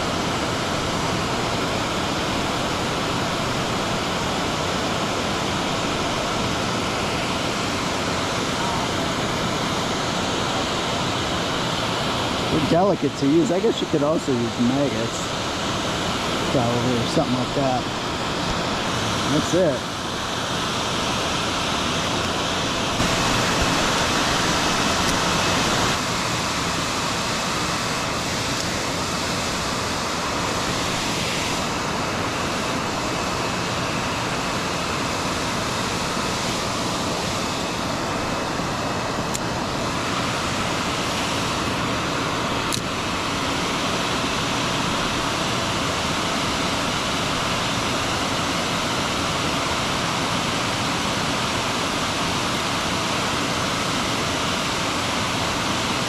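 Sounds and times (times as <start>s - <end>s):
creek water rushing: 0.0s - 56.0s.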